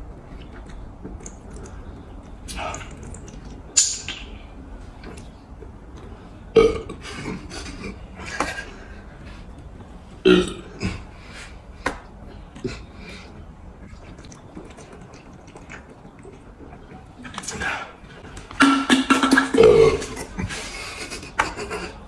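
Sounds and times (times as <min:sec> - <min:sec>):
person burping: 0:06.5 - 0:08.0, 0:10.2 - 0:11.1, 0:18.6 - 0:20.5.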